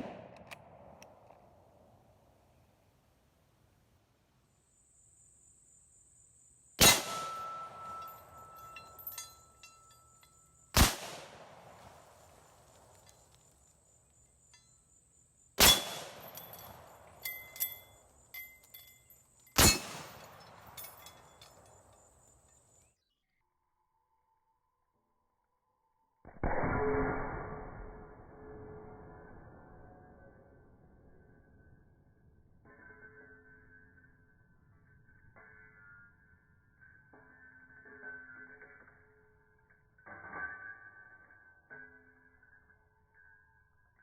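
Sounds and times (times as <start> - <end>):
rifle bolt clicks and clinks: 0.0 - 1.4, 7.0 - 10.6, 11.7 - 14.9, 15.6 - 22.8
rifle shots with echo: 0.0 - 1.5, 6.8 - 8.9, 10.8 - 12.9, 15.6 - 17.6, 19.6 - 20.7.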